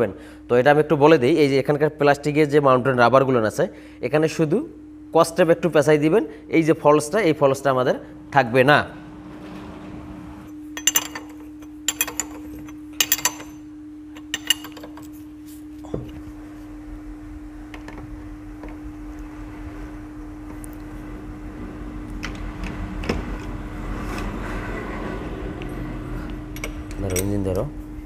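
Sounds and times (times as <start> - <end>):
steady hum: 0.0 - 28.0
metal parts clinking together: 10.8 - 13.6, 14.2 - 15.2, 26.6 - 27.6.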